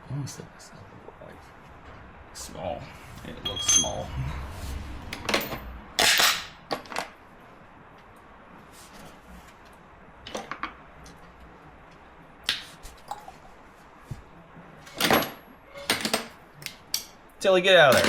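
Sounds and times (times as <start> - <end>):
tools and metal parts clanking: 3.4 - 4.1, 5.1 - 7.2, 14.9 - 17.2.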